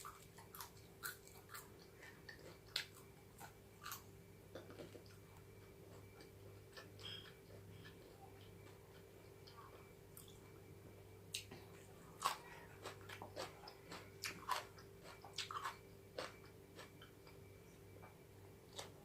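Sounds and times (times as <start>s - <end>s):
chewing and crunching bones: 0.0s - 10.4s, 11.4s - 17.5s.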